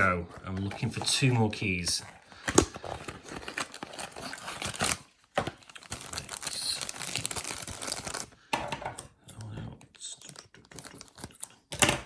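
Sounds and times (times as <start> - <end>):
packaging crinkling: 0.0 - 8.4, 10.2 - 11.8
packaging tearing: 2.4 - 8.4, 10.2 - 11.8.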